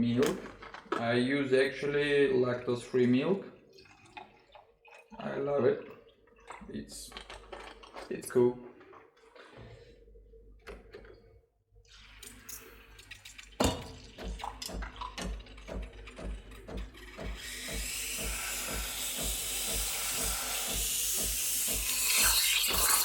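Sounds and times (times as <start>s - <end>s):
music with steady beat: 14.2s - 23.0s.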